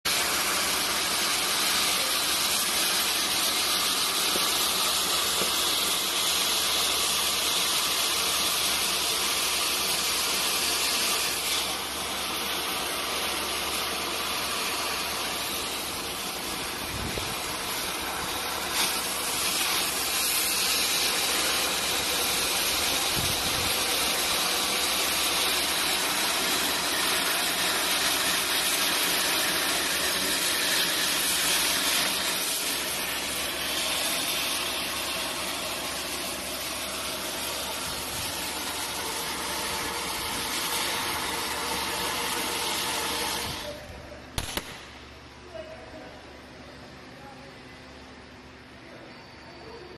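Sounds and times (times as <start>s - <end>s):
cutting torch hissing: 0.0s - 45.1s.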